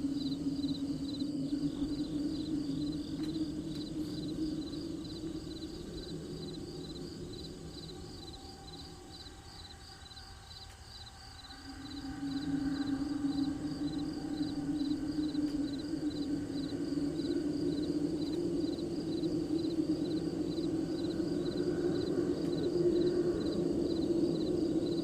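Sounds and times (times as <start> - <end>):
crickets chirping: 0.0 - 25.0
low steady drone: 0.0 - 25.0.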